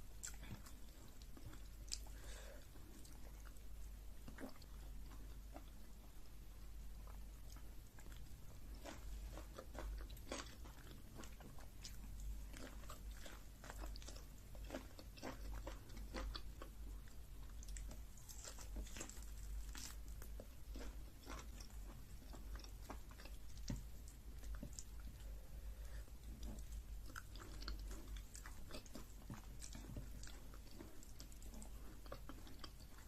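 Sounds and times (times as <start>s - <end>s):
low steady hum: 0.0s - 33.0s
person chewing and biting food: 7.1s - 33.0s.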